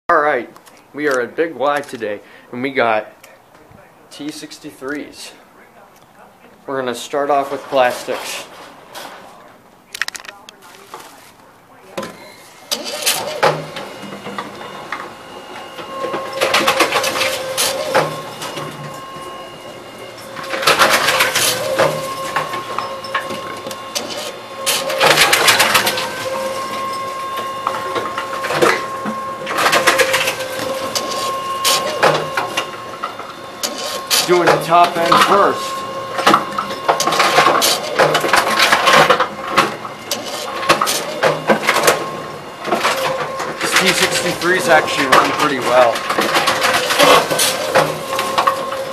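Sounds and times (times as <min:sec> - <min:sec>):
machine motor hum: 0:11.4 - 0:48.9
plastic bottles clattering: 0:42.7 - 0:48.9.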